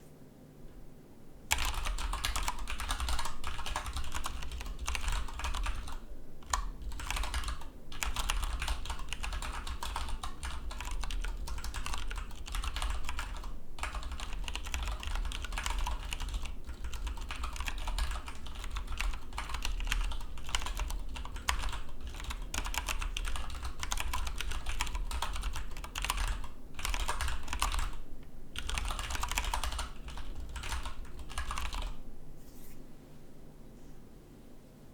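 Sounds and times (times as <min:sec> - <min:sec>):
fast keyboard typing: 0:01.5 - 0:28.0, 0:28.6 - 0:32.0.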